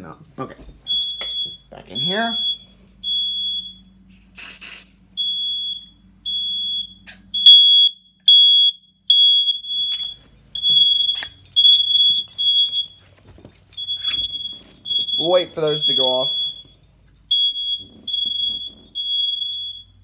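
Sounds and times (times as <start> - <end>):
smoke alarm beeping: 0.0 - 20.0
short hiss: 4.1 - 5.0.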